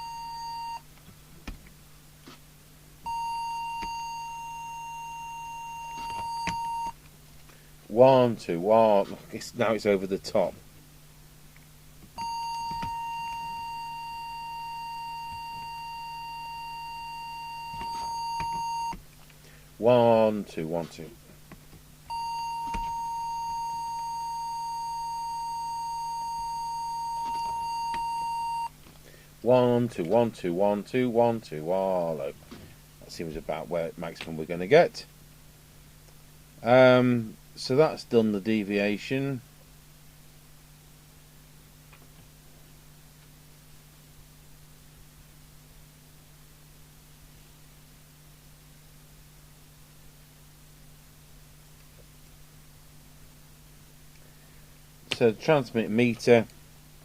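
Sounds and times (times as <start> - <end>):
steady audio test tone: 0.0 - 0.9, 2.0 - 7.1, 7.9 - 19.0, 19.8 - 21.4, 22.0 - 28.8, 29.4 - 32.4.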